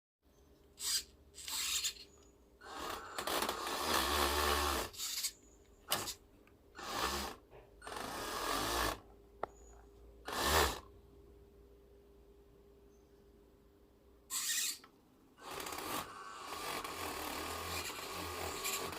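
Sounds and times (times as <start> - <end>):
toy truck motor grinding: 0.8 - 6.2, 6.8 - 9.0, 10.3 - 10.9, 14.3 - 18.9.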